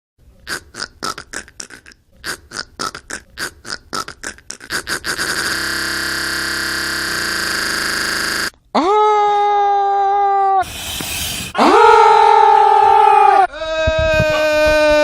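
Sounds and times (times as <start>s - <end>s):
man making buzzing vocal effect: 0.4s - 8.5s.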